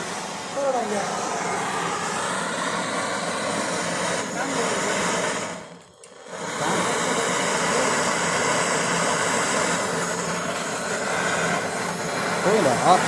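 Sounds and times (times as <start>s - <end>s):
brazing torch flame hissing: 0.0s - 13.0s.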